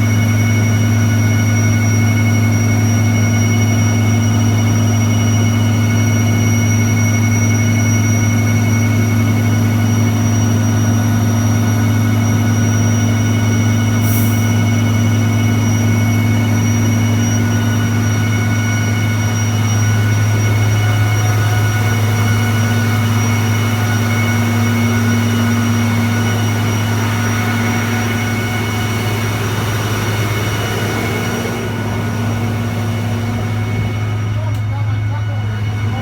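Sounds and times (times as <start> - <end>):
engine running loud: 0.0 - 36.0.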